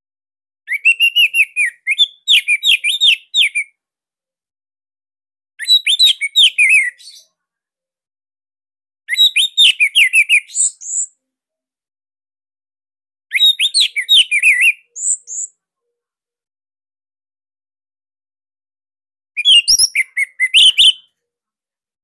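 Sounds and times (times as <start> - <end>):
thrush whistling song: 0.7 - 3.7, 5.6 - 7.3, 9.1 - 11.1, 13.3 - 15.6, 19.4 - 21.1.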